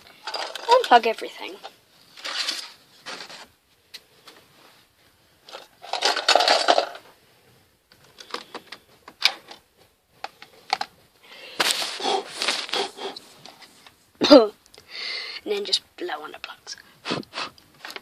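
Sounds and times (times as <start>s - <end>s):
plastic plugs clicking and clattering: 0.0s - 1.7s, 5.5s - 7.1s, 7.9s - 9.6s, 10.2s - 10.9s
rustling scrape: 0.1s - 3.6s, 4.2s - 7.7s, 11.5s - 14.1s.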